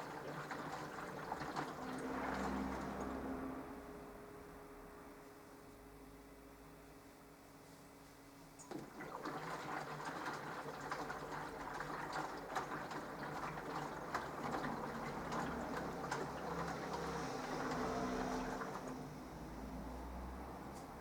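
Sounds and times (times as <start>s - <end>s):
water and laundry sloshing: 0.0s - 3.6s, 8.6s - 19.5s
washing machine motor hum: 0.0s - 4.2s, 8.6s - 21.0s.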